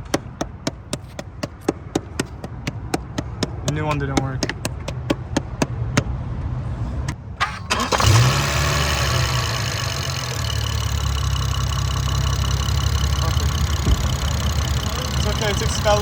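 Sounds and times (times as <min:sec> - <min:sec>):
car engine starting and idling: 0:07.3 - 0:16.0.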